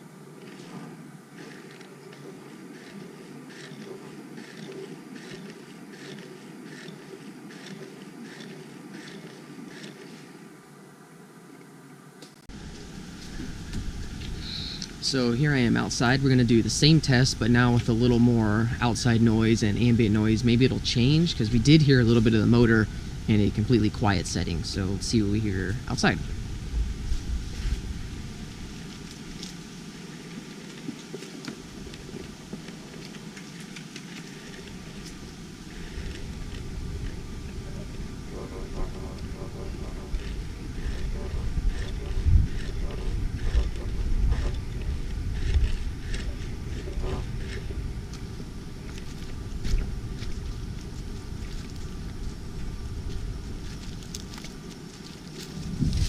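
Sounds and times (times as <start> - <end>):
low outdoor background rumble: 0.0 - 56.0
gimbal motor clicks and crackles: 0.2 - 10.6, 28.6 - 56.0.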